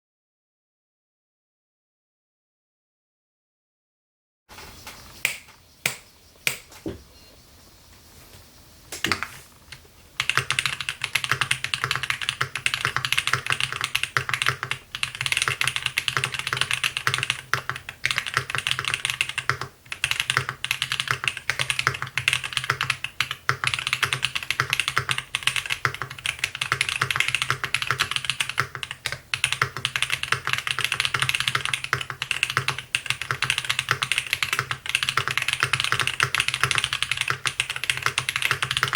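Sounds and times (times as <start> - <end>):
mechanical keyboard typing: 9.0 - 38.9.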